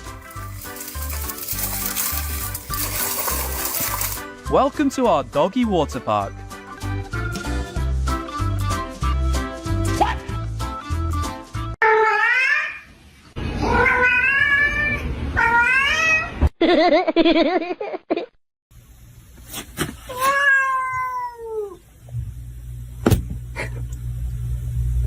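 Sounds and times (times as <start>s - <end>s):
cats meowing: 13.6s - 16.4s, 20.1s - 21.8s.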